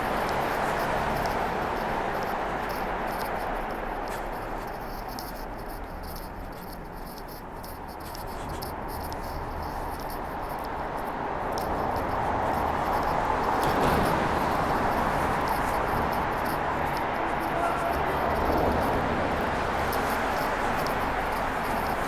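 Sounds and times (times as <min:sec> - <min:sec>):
faint ticks: 0:00.0 - 0:22.0.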